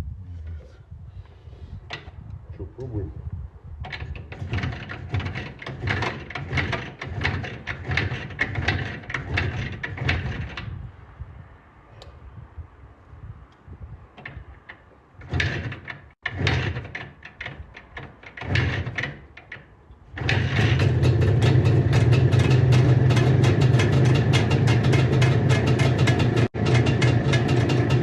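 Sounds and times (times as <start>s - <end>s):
motorcycle engine sputtering and running: 4.2s - 10.7s, 20.2s - 28.0s.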